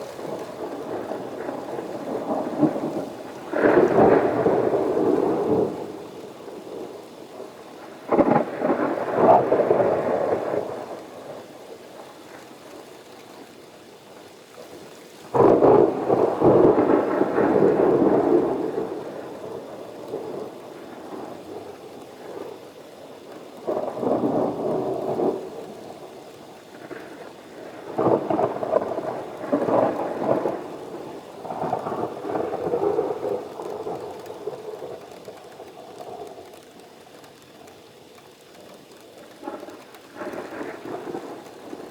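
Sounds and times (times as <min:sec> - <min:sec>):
thunder rumbling: 0:00.0 - 0:12.8, 0:15.3 - 0:41.9
steady rain: 0:00.0 - 0:41.9.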